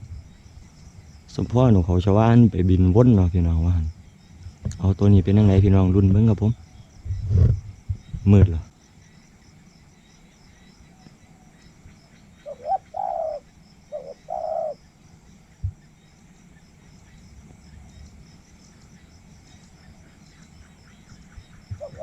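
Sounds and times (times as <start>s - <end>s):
dove cooing: 12.1s - 14.8s, 19.5s - 22.0s.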